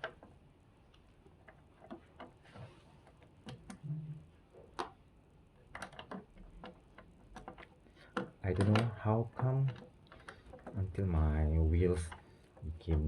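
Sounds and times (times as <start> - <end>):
plastic wheel clicks and knocks: 5.7 - 13.0.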